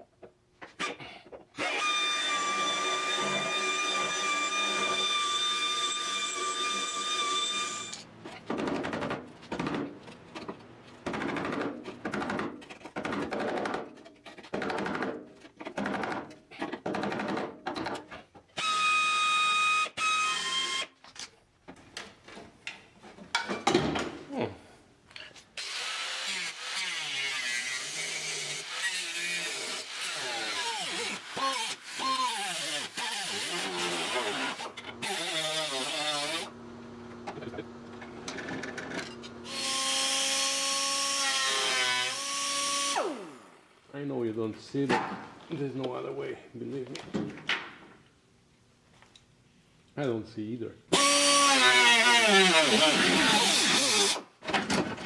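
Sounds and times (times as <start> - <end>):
power tool cutting sheet steel: 1.6 - 8.0, 25.6 - 36.5, 39.4 - 43.4, 50.9 - 54.3.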